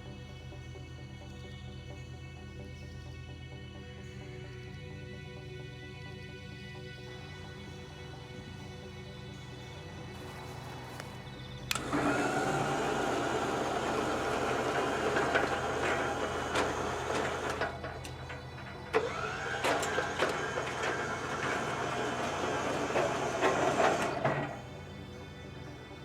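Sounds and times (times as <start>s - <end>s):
background music: 0.0s - 26.0s
electric motor running: 10.2s - 25.9s
clicks and rattles: 11.0s - 24.9s.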